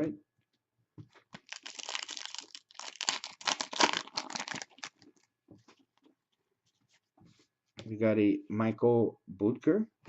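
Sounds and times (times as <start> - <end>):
papery packaging crinkling: 1.3 - 5.3.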